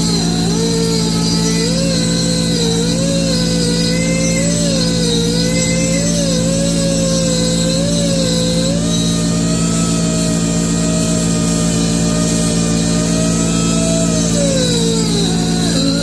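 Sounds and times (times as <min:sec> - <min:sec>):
lathe motor humming: 0:00.0 - 0:16.0.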